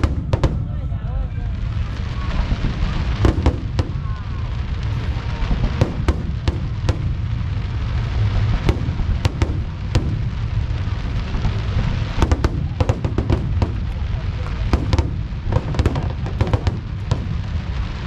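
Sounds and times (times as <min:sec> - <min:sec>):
fireworks booming: 0:00.0 - 0:18.0
fireworks sharp cracks: 0:00.0 - 0:18.0.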